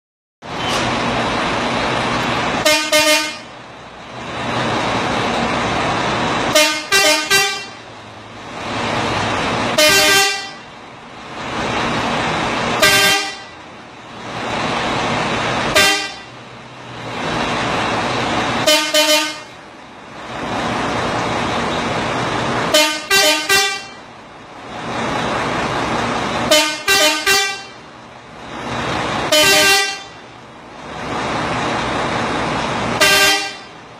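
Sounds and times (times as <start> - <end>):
steady rushing noise: 0.4 - 33.9
truck horn blasts: 2.6 - 3.5, 6.5 - 7.8, 9.7 - 10.7, 12.8 - 13.6, 15.7 - 16.4, 18.6 - 19.6, 22.7 - 24.0, 26.5 - 27.8, 29.3 - 30.2, 33.0 - 33.8.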